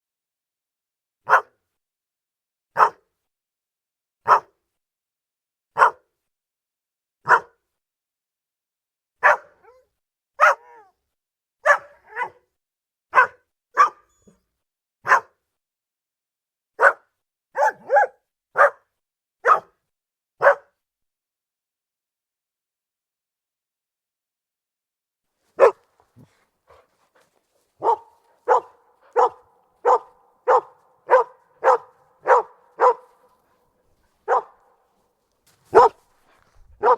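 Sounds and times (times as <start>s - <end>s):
dog barking: 1.2s - 1.6s, 2.8s - 3.0s, 4.2s - 4.6s, 5.8s - 6.1s, 7.2s - 7.6s, 9.2s - 11.0s, 11.6s - 12.5s, 13.1s - 14.4s, 15.0s - 15.4s, 16.8s - 19.8s, 20.4s - 20.8s, 25.6s - 35.0s, 35.6s - 36.9s.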